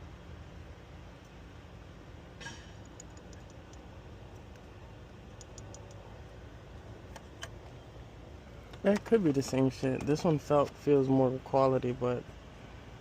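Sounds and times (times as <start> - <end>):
low steady hum: 0.0 - 13.0
faint clicks: 5.4 - 6.0.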